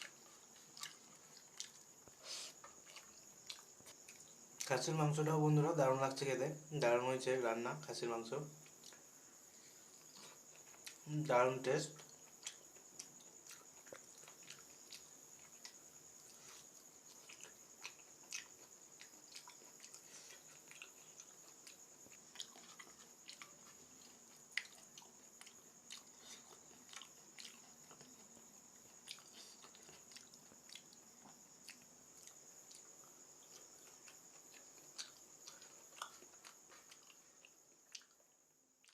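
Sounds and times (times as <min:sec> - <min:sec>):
person chewing food: 0:00.0 - 0:04.7, 0:08.6 - 0:11.1, 0:12.0 - 0:38.9.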